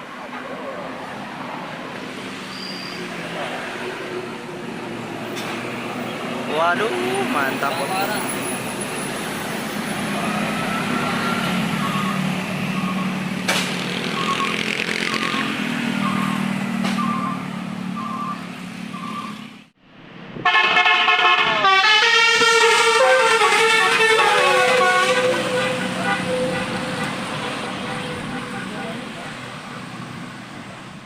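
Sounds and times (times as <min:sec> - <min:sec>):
bus engine labouring: 0:00.0 - 0:31.0
short beeps: 0:14.1 - 0:19.4
melodic bus horn: 0:20.4 - 0:29.5.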